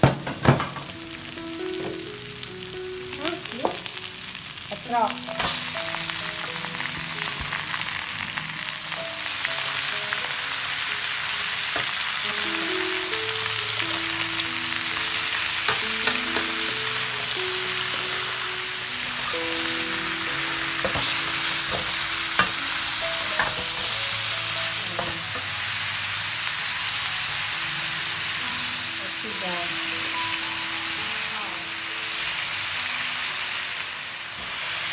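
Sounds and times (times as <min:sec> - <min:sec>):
food sizzling in a hot pan: 0:00.0 - 0:34.9.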